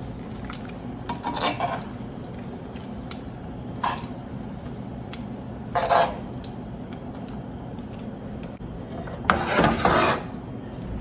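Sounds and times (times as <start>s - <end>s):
utensil scraping a skillet: 1.1s - 2.0s, 5.7s - 6.2s, 9.0s - 10.4s.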